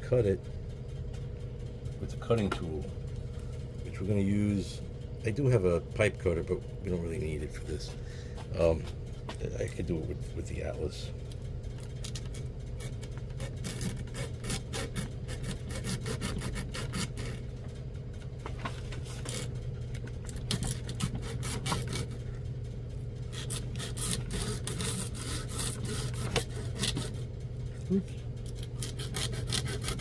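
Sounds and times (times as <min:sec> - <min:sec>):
steady low hum: 0:00.0 - 0:30.0
cutting tool rasping on pipe: 0:12.8 - 0:17.4, 0:20.5 - 0:22.2, 0:23.3 - 0:27.2, 0:28.6 - 0:30.0.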